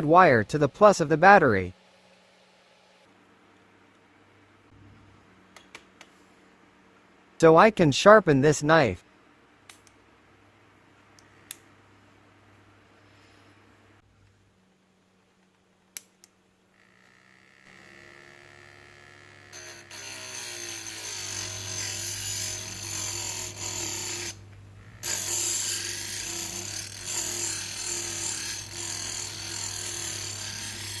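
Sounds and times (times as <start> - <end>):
knife grinding on sandpaper disc: 19.5 - 24.4, 25.0 - 31.0.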